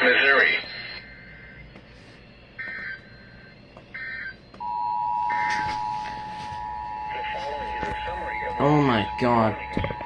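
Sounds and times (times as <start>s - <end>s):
screeching digital data bursts: 8.0s - 10.0s.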